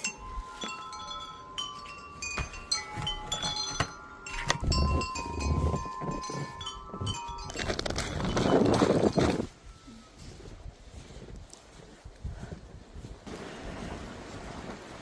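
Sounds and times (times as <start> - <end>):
metal wind chimes ringing: 0.0 - 10.2.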